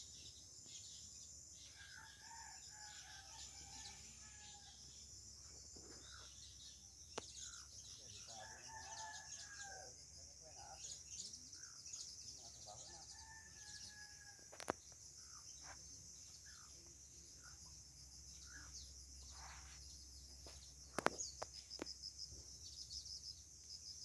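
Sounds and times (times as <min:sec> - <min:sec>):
insects trilling: 0:00.0 - 0:24.0.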